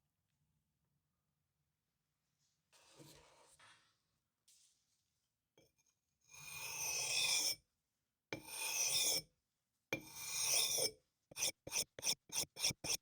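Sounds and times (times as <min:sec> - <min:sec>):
hand file scraping: 0:10.2 - 0:13.0.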